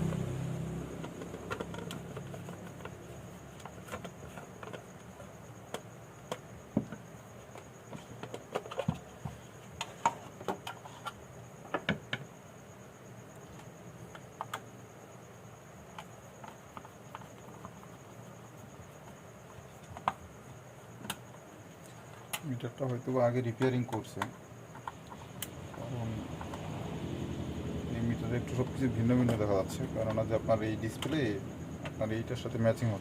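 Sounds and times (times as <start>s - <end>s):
hands clicking on plastic housing: 1.0s - 12.2s.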